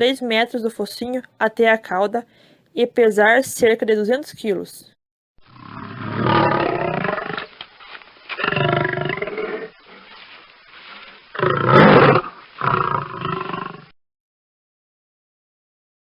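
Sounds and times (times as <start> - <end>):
lion roaring: 5.5 - 7.6, 8.3 - 10.1, 11.3 - 13.9.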